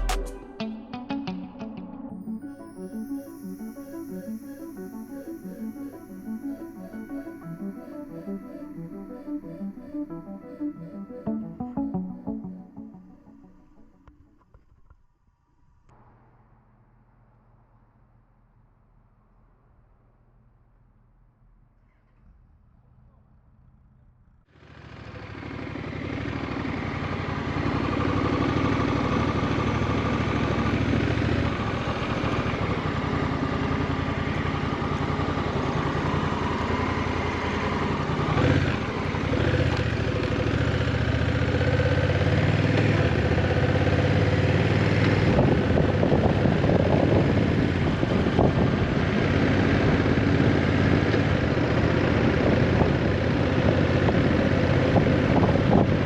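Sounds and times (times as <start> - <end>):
road and wind noise: 25.8 - 56.0.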